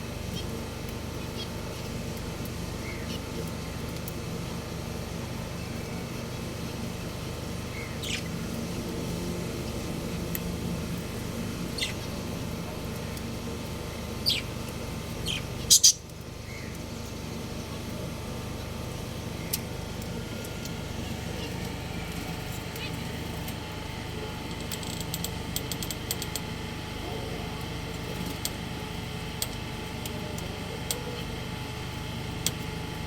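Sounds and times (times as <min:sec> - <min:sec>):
low background hum: 0:00.0 - 0:33.0
budgerigars chirping: 0:11.7 - 0:12.1, 0:14.2 - 0:14.5, 0:15.2 - 0:16.7.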